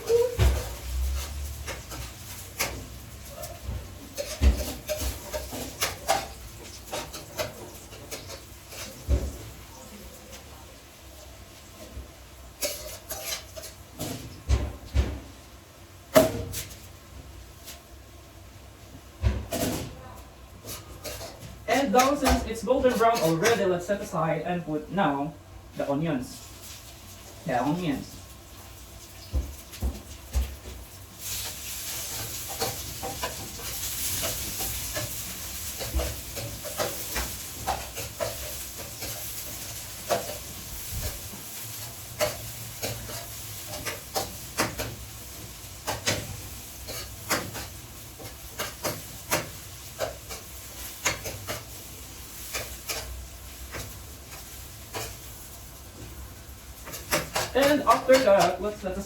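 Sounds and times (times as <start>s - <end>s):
onions sizzling in a frying pan: 0.0s - 24.3s, 26.1s - 59.0s
spatula scraping a pan: 0.1s - 9.1s, 12.6s - 14.2s, 20.6s - 23.7s, 31.2s - 59.0s.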